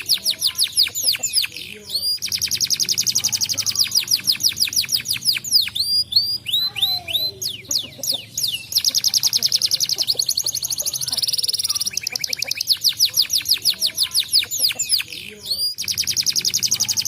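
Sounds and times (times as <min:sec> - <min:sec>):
canary singing trills: 0:00.0 - 0:17.0.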